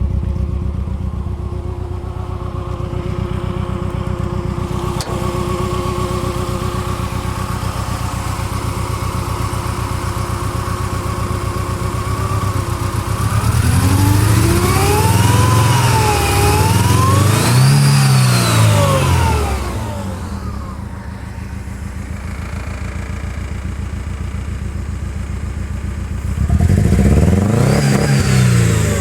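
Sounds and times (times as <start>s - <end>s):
car engine revving: 0.0s - 23.6s, 26.2s - 29.0s.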